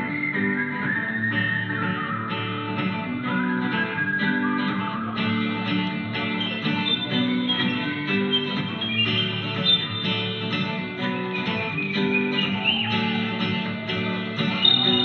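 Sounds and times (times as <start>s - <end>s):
guitar plucked and strummed: 0.0s - 15.0s.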